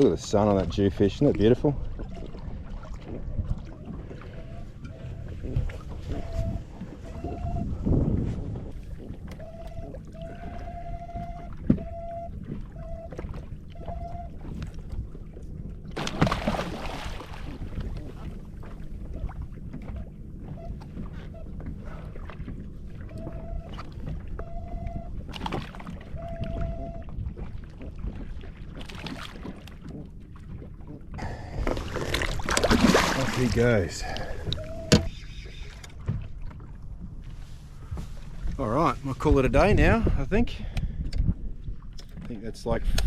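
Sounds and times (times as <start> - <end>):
wind and water on hull: 0.0 - 43.0
short whining tones: 33.4 - 36.3.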